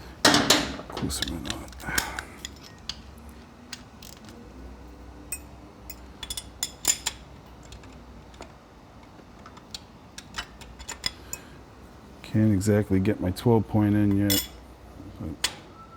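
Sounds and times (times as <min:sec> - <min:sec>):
socket wrench clinking on nut: 0:14.2 - 0:14.6.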